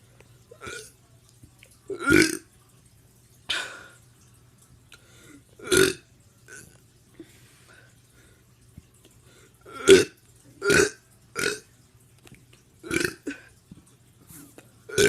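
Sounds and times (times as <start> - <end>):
person burping: 0.6 - 0.9, 1.9 - 2.5, 5.6 - 6.6, 9.7 - 11.6, 12.8 - 13.6.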